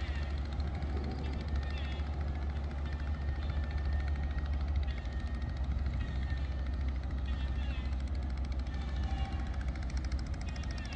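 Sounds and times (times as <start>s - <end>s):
boat engine rumbling: 0.0s - 2.8s.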